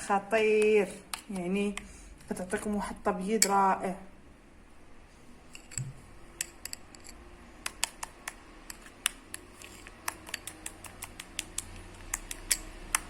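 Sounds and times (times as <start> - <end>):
spoon clicking against bowl: 5.5 - 13.0.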